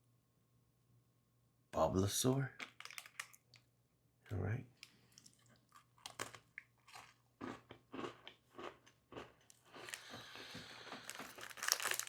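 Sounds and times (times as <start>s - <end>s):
cookie crunching: 5.1s - 12.0s.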